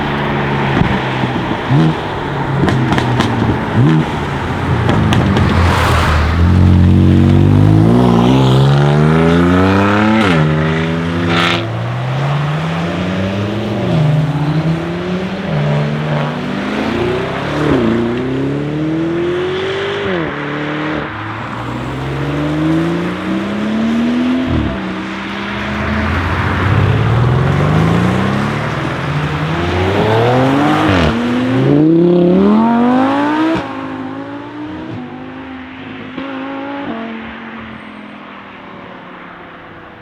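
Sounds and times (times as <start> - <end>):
exhaust cracks: 0.0 - 18.3
car engine accelerating hard: 0.0 - 38.0.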